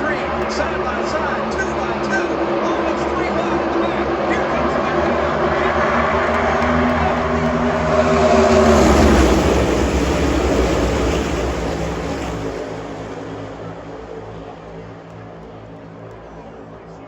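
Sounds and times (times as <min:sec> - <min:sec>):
race car engines passing at full throttle: 0:00.0 - 0:17.0.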